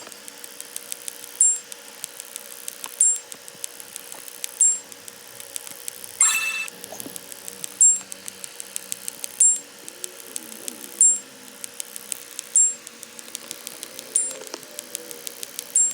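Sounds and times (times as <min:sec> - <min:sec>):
short high-pitched beep: 0:06.2 - 0:06.7.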